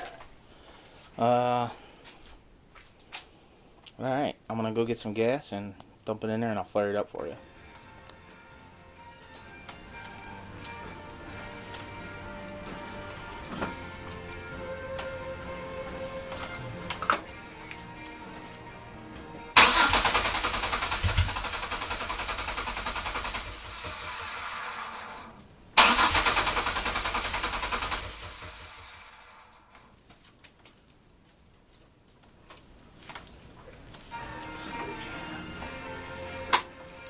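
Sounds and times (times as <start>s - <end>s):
engine cranked by starter: 19.6s - 29.8s.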